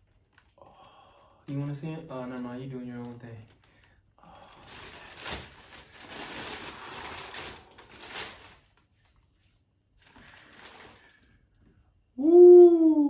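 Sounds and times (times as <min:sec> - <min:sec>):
packaging rustling and crinkling: 0:01.4 - 0:11.4.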